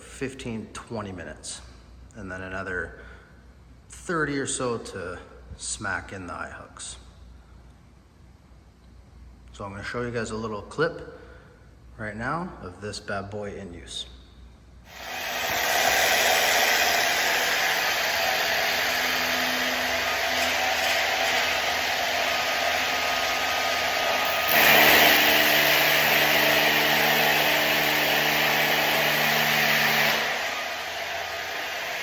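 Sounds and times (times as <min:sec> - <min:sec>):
hammer drill drilling into concrete: 0:14.9 - 0:32.0.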